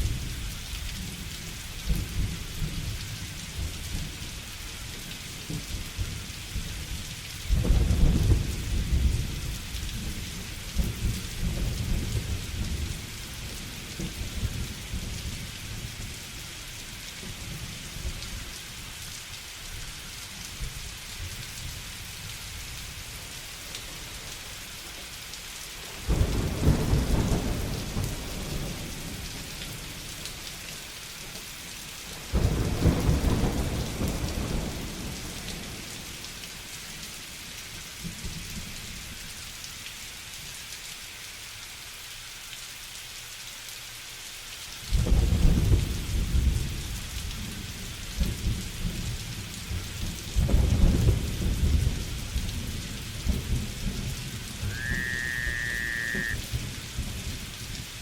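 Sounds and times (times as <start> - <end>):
heavy rain: 0.0 - 58.0
thunder rumbling: 50.4 - 57.6.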